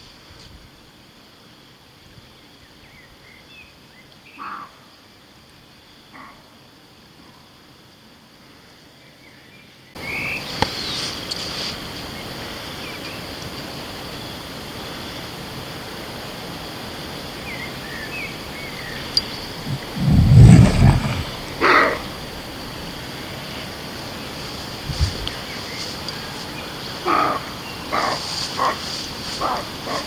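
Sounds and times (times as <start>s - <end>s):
steady hiss: 0.0s - 30.0s
faint chirps: 17.5s - 23.8s.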